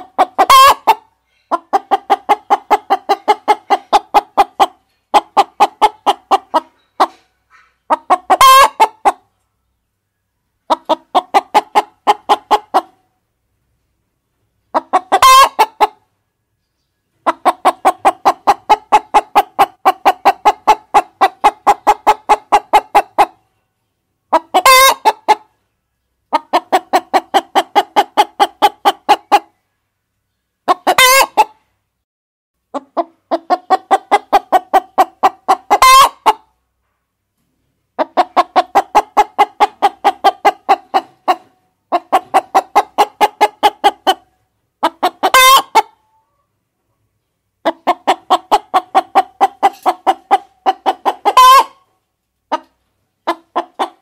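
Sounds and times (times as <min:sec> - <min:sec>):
chicken squawk: 0:00.0 - 0:09.3, 0:14.7 - 0:16.0, 0:24.3 - 0:25.5, 0:30.6 - 0:31.7, 0:32.7 - 0:36.6, 0:38.0 - 0:46.5, 0:47.6 - 0:51.9
chickens clucking: 0:00.0 - 0:13.2, 0:13.8 - 0:32.0, 0:32.7 - 0:54.0.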